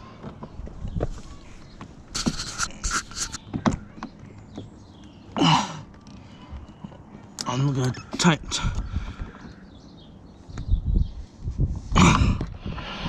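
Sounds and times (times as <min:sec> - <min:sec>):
rustling scrapes: 0:00.8 - 0:03.4
person grunting: 0:12.0 - 0:12.5.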